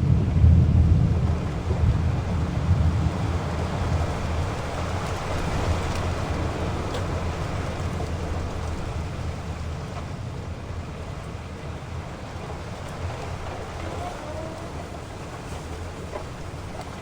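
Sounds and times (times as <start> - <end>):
deep rumble of thunder: 0.0 - 17.0
heavy rain pouring: 0.0 - 17.0.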